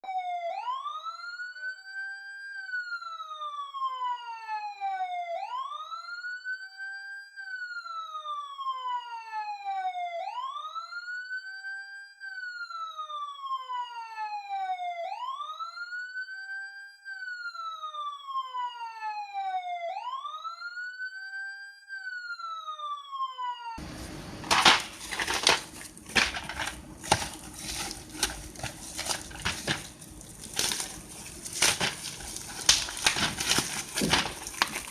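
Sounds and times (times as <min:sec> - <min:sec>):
electronic wailing siren: 0:00.0 - 0:23.9
crackling rustling noise: 0:23.8 - 0:34.9.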